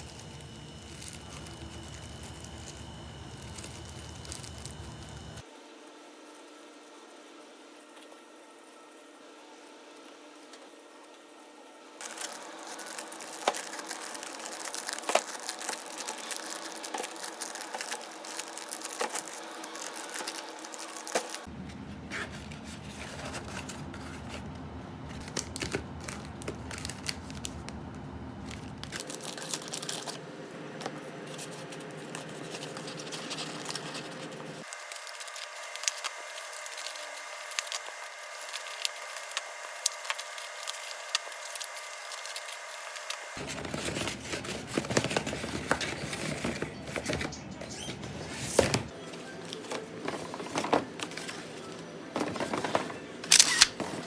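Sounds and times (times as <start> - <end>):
background hum: 0.0 - 5.4, 12.0 - 49.0
crinkling and rustling: 0.0 - 5.4, 12.0 - 30.2, 30.8 - 54.0.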